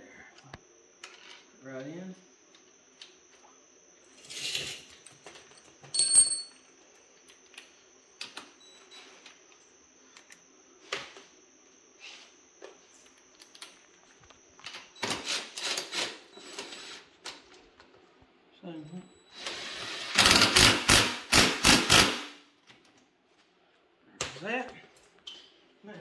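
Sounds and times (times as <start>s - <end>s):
metal parts clinking and clattering: 5.9s - 6.6s.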